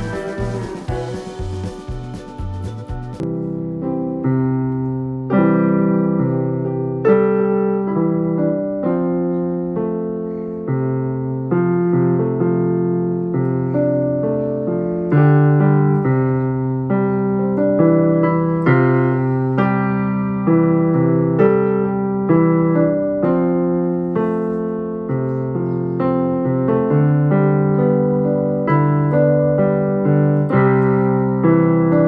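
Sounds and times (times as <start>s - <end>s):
keyboard playing piano chords: 0.0s - 32.0s.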